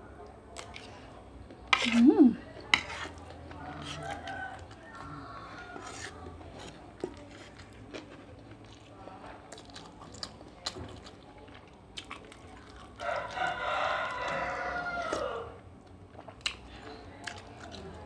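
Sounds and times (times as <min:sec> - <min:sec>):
rooster crowing: 0:03.8 - 0:06.0, 0:13.0 - 0:15.6.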